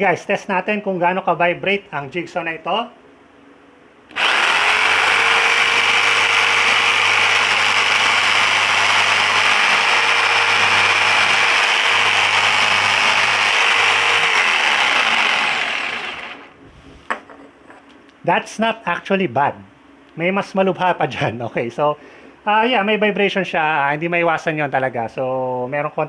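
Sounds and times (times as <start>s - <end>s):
jigsaw motor running: 4.1s - 16.5s.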